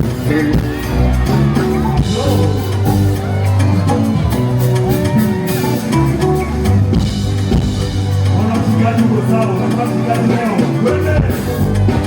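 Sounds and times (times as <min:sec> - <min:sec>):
person singing: 0:00.0 - 0:06.6
live band music: 0:00.0 - 0:12.0.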